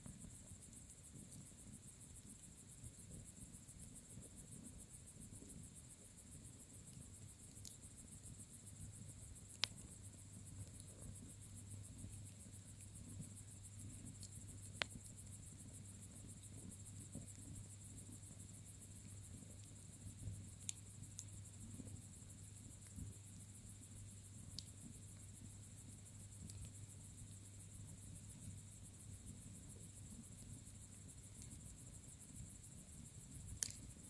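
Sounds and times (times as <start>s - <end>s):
low rumble of flames: 0.0s - 34.0s
bonfire pops: 33.4s - 34.0s.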